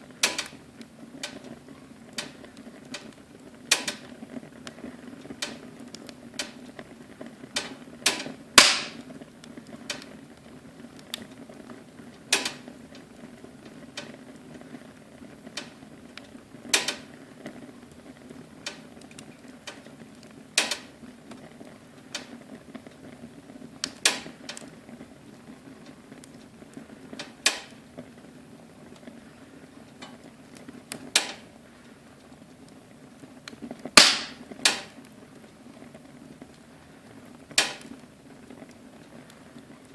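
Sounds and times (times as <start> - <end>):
low rumble of flames: 0.0 - 39.9
sharp fire pops: 0.0 - 39.9
wood fire crackling: 0.0 - 39.9.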